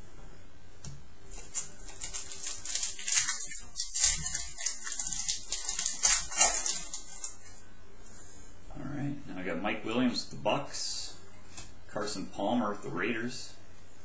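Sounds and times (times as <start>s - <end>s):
card pack wrapper crinkling and tearing: 1.3s - 7.5s.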